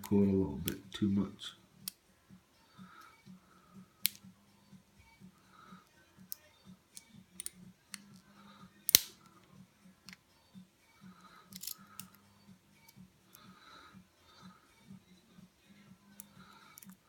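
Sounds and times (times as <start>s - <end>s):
lock pick clicking and scraping: 6.2s - 8.2s, 8.9s - 9.1s, 11.4s - 12.2s, 16.2s - 17.0s.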